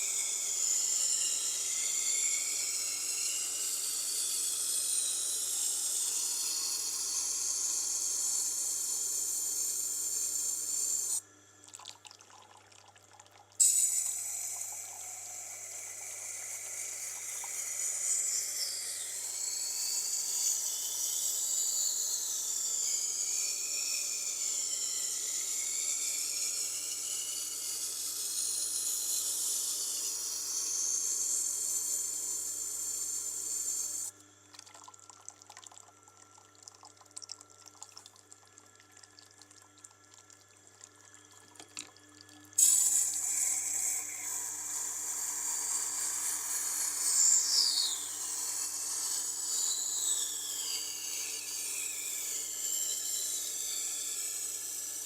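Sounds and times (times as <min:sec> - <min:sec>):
knife grinding on grindstone: 0:13.6 - 0:25.0, 0:42.6 - 0:53.9.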